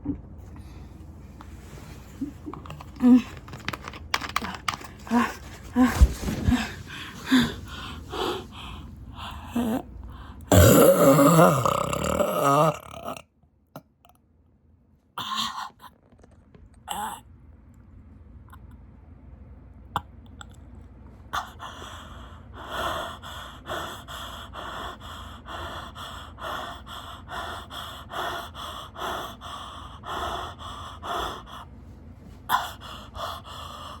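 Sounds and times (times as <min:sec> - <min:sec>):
person breathing hard: 0:01.8 - 0:10.6, 0:21.4 - 0:34.0.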